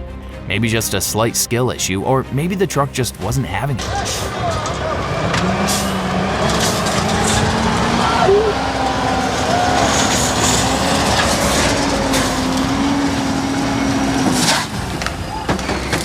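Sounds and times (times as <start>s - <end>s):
heavy truck engine droning: 3.8s - 16.0s.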